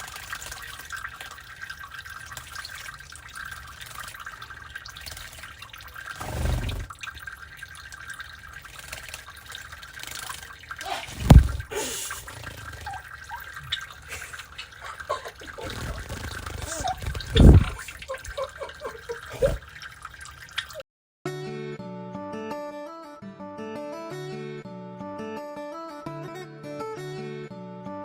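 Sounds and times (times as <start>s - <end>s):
small splashes and drips: 0.0s - 20.8s
soft low thump: 11.1s - 11.7s
sudden loud burst: 11.1s - 11.9s.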